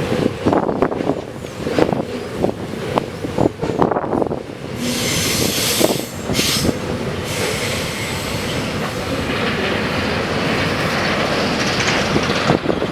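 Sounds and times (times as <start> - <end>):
train wheels rumbling on rails: 0.0 - 12.9
high-pitched wheel squeal: 4.8 - 8.6.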